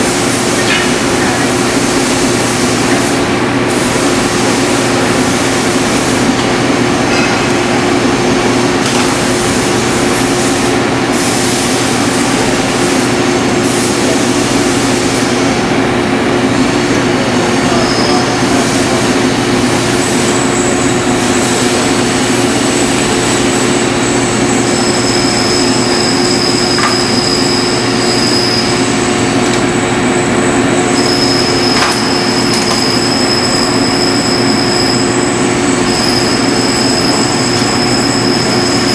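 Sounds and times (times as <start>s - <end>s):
metal lathe running: 0.0s - 38.9s
high-pitched squealing tones: 23.7s - 29.1s, 30.8s - 38.9s.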